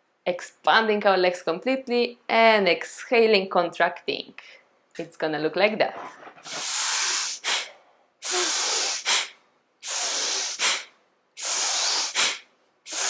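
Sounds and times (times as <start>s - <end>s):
forceful breathing: 6.4s - 13.0s.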